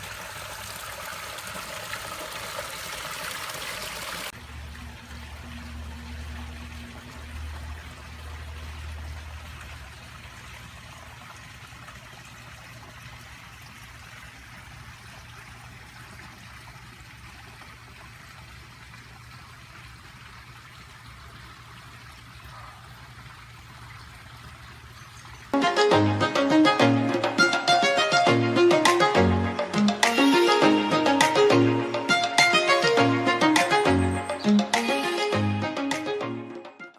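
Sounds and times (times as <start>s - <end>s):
waterfall trickling over rocks: 0.0s - 25.6s.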